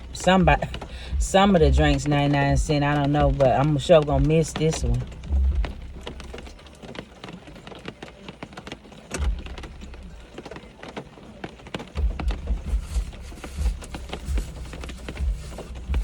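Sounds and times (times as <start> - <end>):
low thumps: 0.0 - 6.7, 9.2 - 10.4, 12.0 - 16.0.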